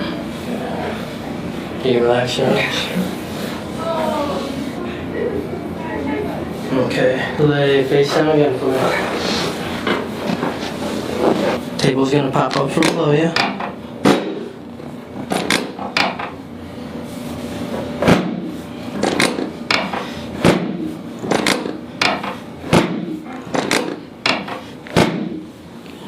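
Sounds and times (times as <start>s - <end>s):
table sections clacking and knocking: 15.3s - 16.4s, 21.2s - 25.2s.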